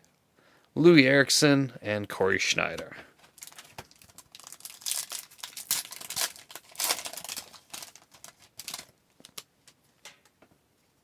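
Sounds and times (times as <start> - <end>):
foil wrapper crinkling: 3.2 - 9.5.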